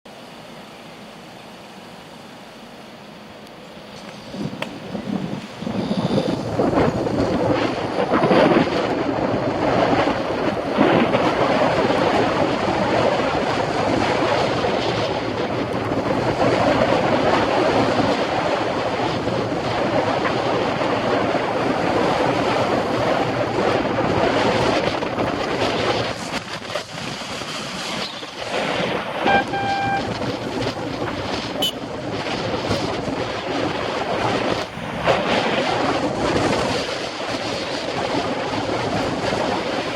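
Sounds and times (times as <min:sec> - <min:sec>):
traffic: 0:00.1 - 0:39.9
wind rush on microphone: 0:03.8 - 0:39.9
horn blast: 0:29.2 - 0:30.3, 0:31.6 - 0:31.9.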